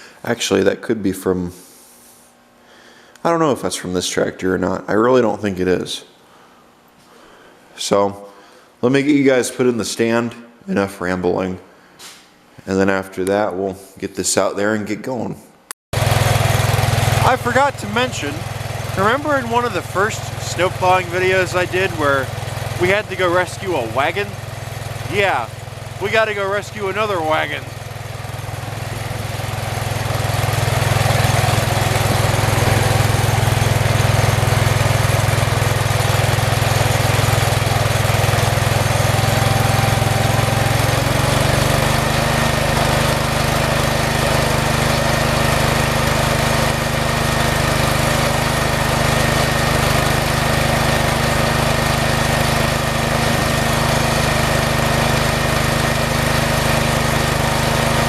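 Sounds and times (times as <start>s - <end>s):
small tractor engine running: 16.0s - 58.0s.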